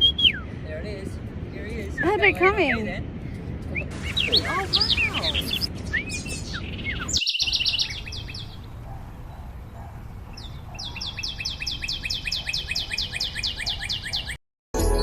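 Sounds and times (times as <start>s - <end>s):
birds chirping: 0.0s - 14.4s.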